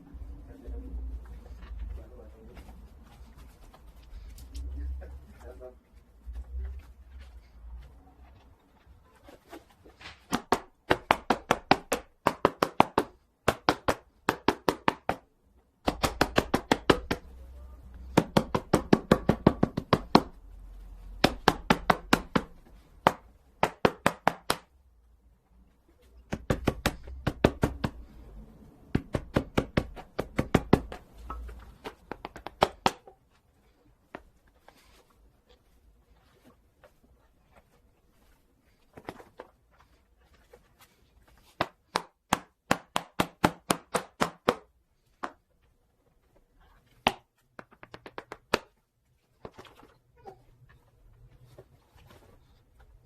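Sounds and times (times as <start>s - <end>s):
hand pounding leather glove: 10.0s - 17.3s, 18.0s - 20.5s, 21.1s - 24.7s, 26.2s - 28.1s, 28.9s - 33.2s, 41.4s - 45.5s, 47.0s - 48.8s.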